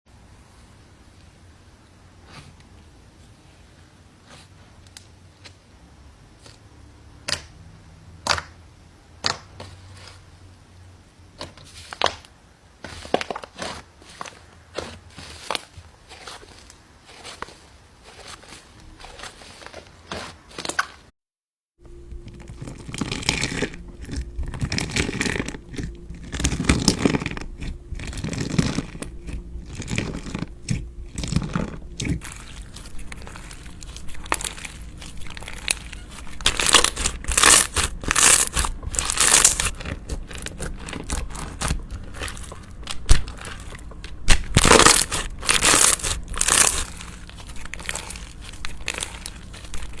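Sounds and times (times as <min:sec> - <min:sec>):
slime squishing and crackling: 0:11.4 - 0:21.1, 0:22.2 - 0:50.0.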